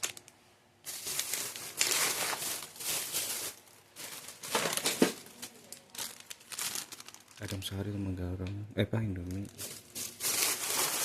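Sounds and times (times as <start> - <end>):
plastic packets crinkling: 0.0 - 7.9, 9.2 - 11.0.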